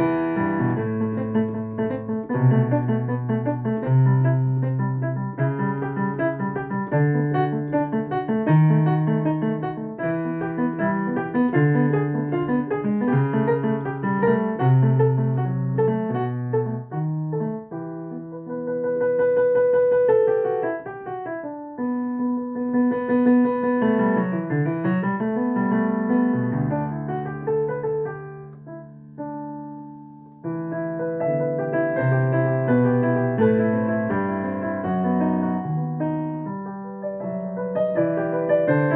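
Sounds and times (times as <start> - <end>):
solo piano keyboard music: 0.0 - 38.9.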